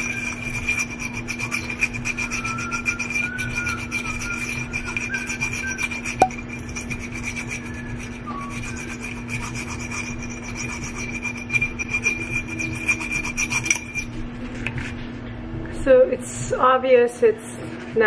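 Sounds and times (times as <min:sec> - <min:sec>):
metal nail file rasping on glass: 0:00.0 - 0:14.1.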